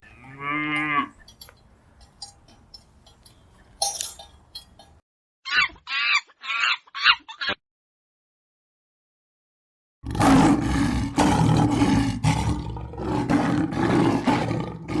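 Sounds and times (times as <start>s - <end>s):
big cat roaring: 10.0s - 15.0s.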